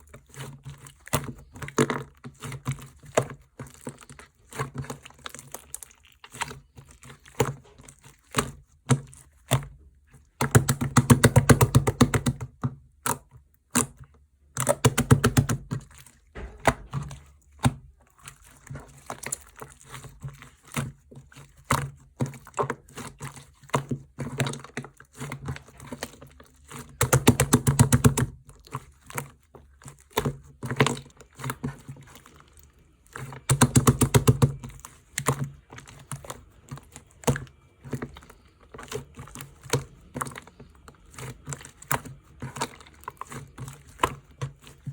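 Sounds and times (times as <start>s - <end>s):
slime squished with clicks and pops: 10.4s - 15.8s, 33.4s - 36.4s.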